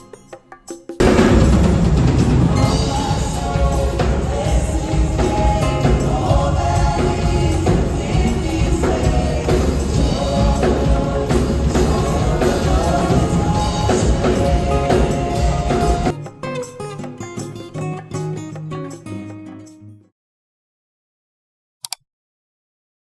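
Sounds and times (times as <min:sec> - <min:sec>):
gospel choir singing: 0:01.0 - 0:16.2.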